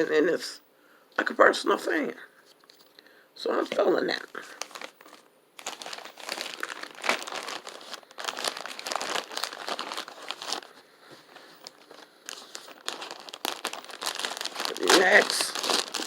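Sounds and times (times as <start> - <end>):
plastic packaging crinkling: 3.6 - 16.0.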